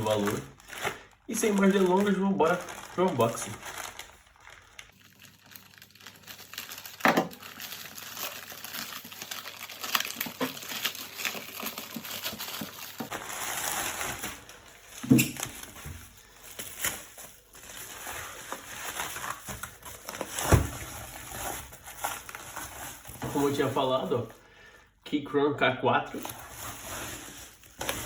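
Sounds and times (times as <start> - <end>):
packaging crinkling and rustling: 0.0 - 24.4, 26.1 - 28.0
knocks of package handling: 7.0 - 7.4, 20.4 - 20.9.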